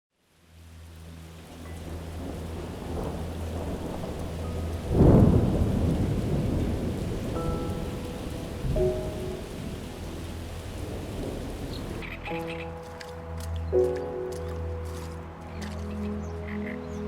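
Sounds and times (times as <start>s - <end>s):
steady rain: 0.1s - 12.3s
thunder clap rumbling: 1.7s - 12.0s.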